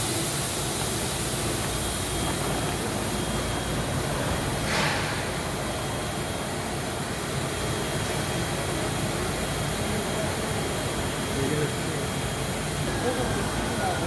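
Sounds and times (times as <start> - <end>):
high machine whine: 0.0 - 14.0
packaging machinery humming: 0.0 - 14.0
burst of air hiss: 4.5 - 5.9.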